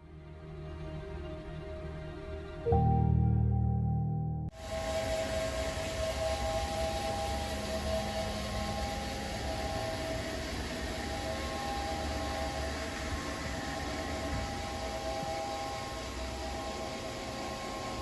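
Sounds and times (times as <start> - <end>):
lathe running with hum and hiss: 4.5 - 18.0
high whining motor tones: 4.6 - 18.0.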